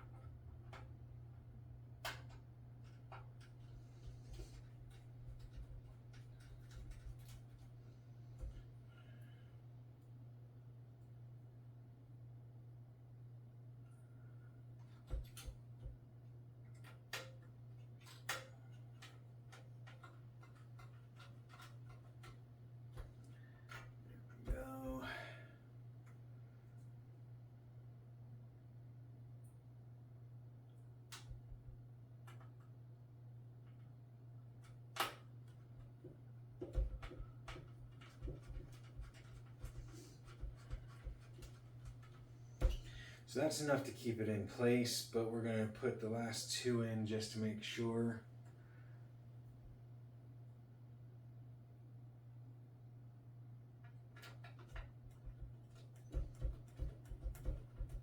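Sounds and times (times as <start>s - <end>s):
steady low hum: 0.0s - 58.0s
screwdriver clicks and scraping: 16.7s - 22.4s.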